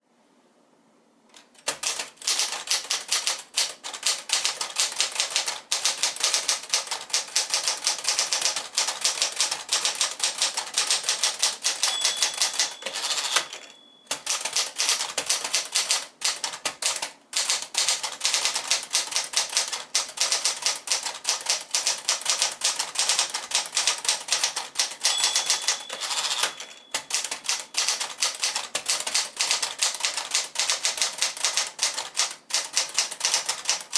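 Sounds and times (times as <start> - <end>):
typewriter typing: 1.4 - 33.9
typewriter bell ringing: 10.9 - 15.0, 24.4 - 28.4.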